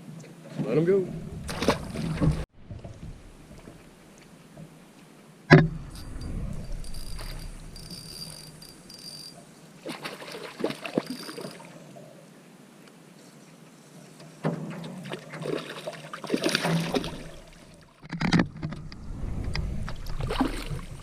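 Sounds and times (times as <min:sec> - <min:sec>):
high insect buzz: 0:06.7 - 0:09.4.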